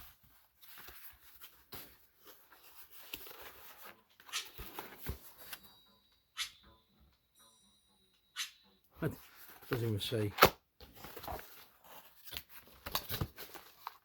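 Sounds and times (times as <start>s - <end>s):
package rustling: 9.3s - 14.0s.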